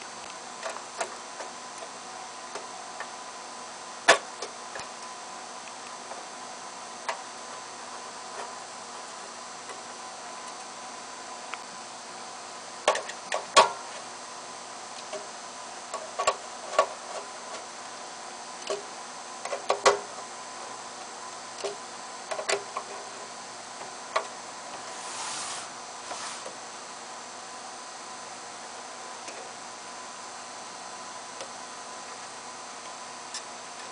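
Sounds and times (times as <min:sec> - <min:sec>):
faint steady hum: 0:00.0 - 0:33.9
brief scrape: 0:24.8 - 0:26.6.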